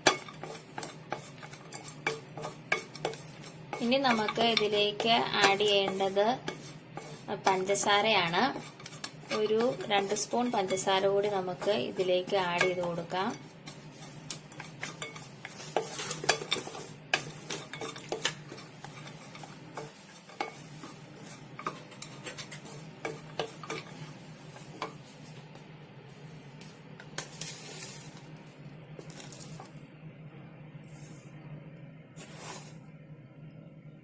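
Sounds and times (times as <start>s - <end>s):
spoon tapping a pan: 0.0s - 6.7s, 8.8s - 20.7s
metal spoon scraping a frying pan: 0.0s - 25.0s
light sizzle: 0.0s - 30.0s, 30.8s - 33.7s.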